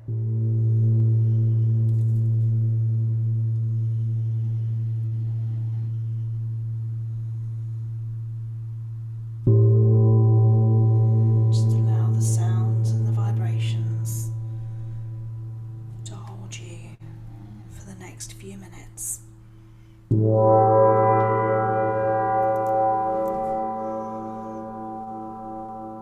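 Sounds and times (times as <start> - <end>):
struck metal instrument ringing: 20.1 - 26.0.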